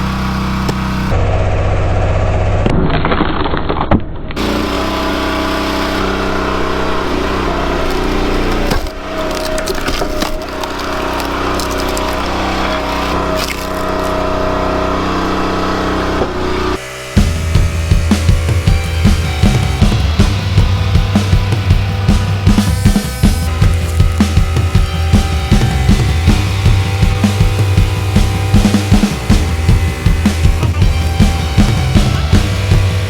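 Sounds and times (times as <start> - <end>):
log splitter engine running: 0.0 - 2.7, 4.4 - 33.0
logs cracking and splintering: 2.6 - 4.4, 7.4 - 15.9, 22.7 - 26.0.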